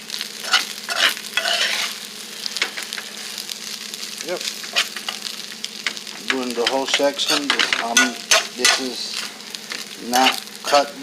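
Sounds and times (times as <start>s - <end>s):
rice sizzling in a pan: 0.0s - 11.0s
utensil scraping a pan: 0.4s - 2.0s, 4.6s - 11.0s.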